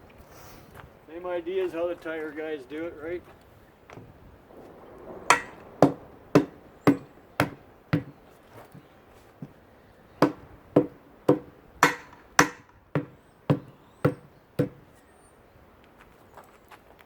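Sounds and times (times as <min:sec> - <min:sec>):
hammer striking tire on rim: 0:05.3 - 0:08.2, 0:10.2 - 0:14.9.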